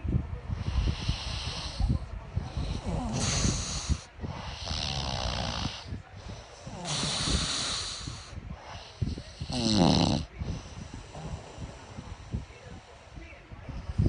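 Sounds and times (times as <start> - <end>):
man snoring: 2.6 - 5.9, 6.6 - 12.5.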